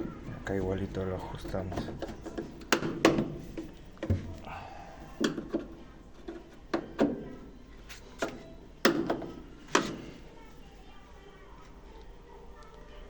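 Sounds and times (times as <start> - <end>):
tool knocks and clicks: 1.7 - 4.4.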